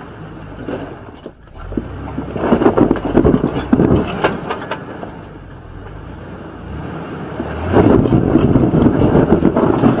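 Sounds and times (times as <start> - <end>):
truck engine crawling over rocks: 0.0 - 10.0
wind rumbling on microphone: 1.0 - 4.6, 7.4 - 10.0.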